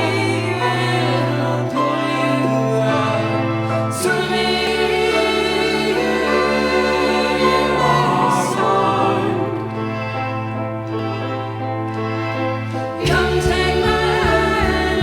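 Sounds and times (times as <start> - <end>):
choir singing held chords: 0.0 - 15.0
low sustained bass note: 10.8 - 15.0.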